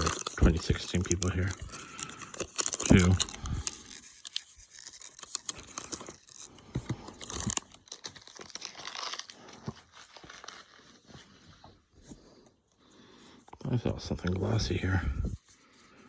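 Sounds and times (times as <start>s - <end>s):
trading cards flipped by hand: 0.0s - 9.3s.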